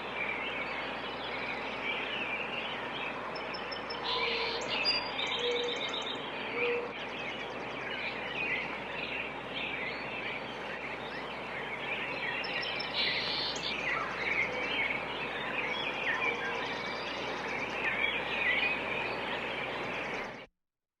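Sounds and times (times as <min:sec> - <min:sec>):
outdoor background hiss: 0:00.0 - 0:20.5
songbirds chirping: 0:00.0 - 0:20.5
high rapid bird trill: 0:07.0 - 0:20.3.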